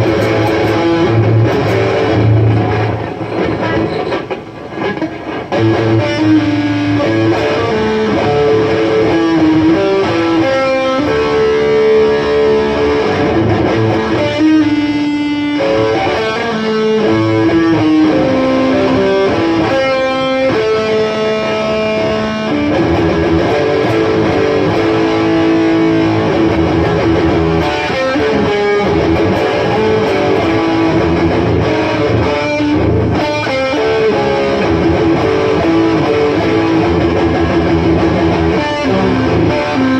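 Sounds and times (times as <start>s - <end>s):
guitar music: 0.0s - 39.9s.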